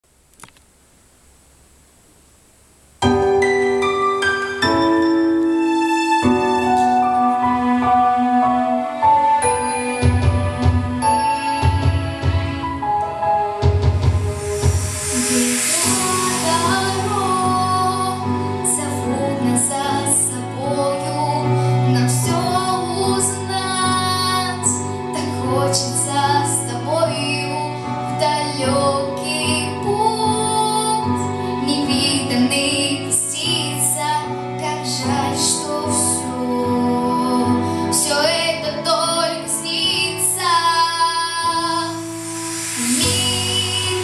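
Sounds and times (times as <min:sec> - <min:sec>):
instrumental backing music: 0:03.0 - 0:44.0
woman singing: 0:15.2 - 0:42.2, 0:42.8 - 0:44.0.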